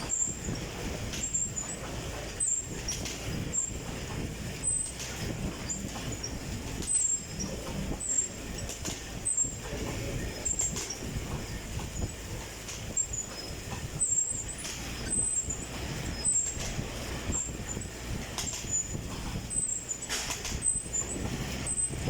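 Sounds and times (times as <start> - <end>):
exercise bike whoosh: 0.0 - 22.0.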